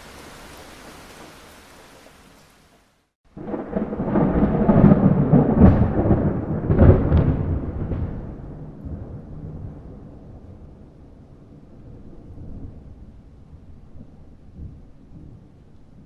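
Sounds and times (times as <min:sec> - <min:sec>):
steady rain: 0:00.0 - 0:16.0
thunder rumble with cracks: 0:03.3 - 0:16.0.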